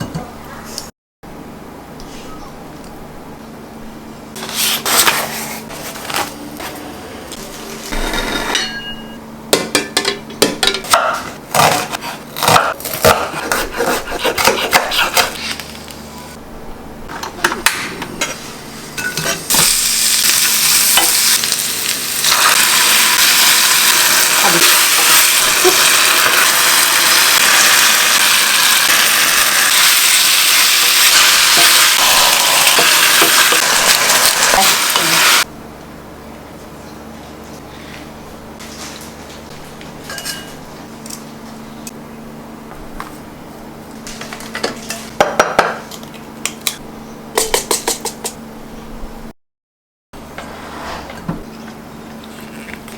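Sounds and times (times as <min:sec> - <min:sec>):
utensils and cookware clattering: 0:07.5 - 0:15.6, 0:19.0 - 0:19.7, 0:40.0 - 0:40.6, 0:44.1 - 0:46.0
food sizzling in a pan: 0:18.9 - 0:35.5.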